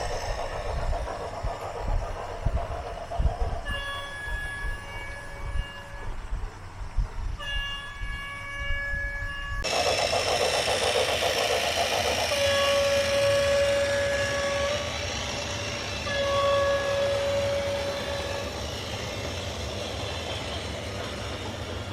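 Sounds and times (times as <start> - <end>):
horn blasts: 12.3 - 18.8.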